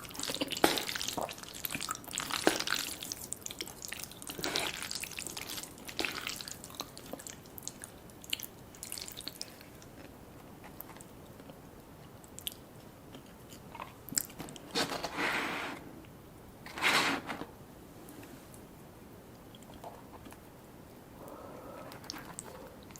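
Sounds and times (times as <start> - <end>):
chewing and crunching: 0.0 - 14.9, 21.2 - 22.9.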